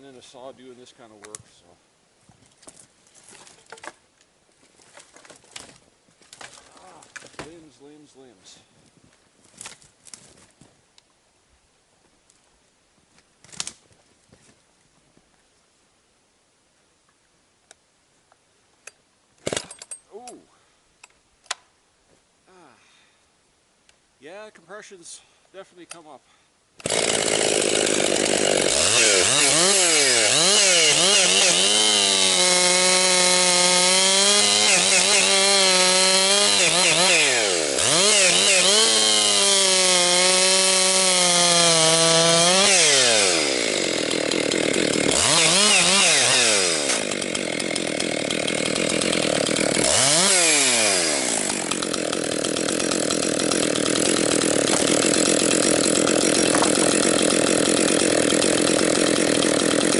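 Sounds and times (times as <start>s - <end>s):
chainsaw cutting wood: 19.4s - 20.4s, 26.8s - 59.9s.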